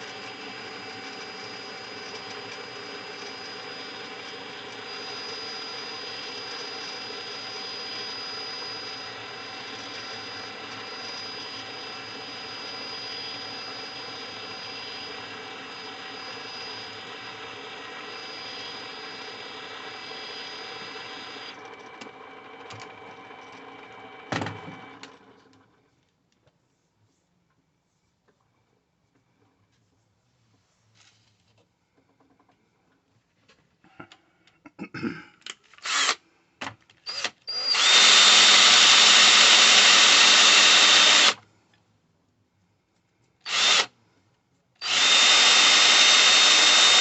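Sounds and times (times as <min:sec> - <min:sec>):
machine motor running: 0:00.0 - 0:25.6.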